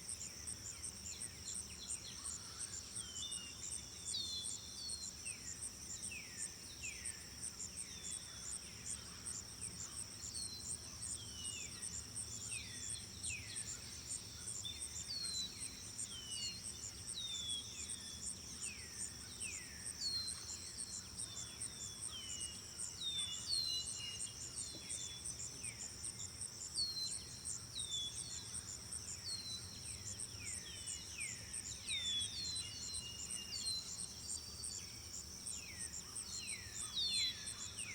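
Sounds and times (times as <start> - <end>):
insects trilling: 7.4 - 37.9.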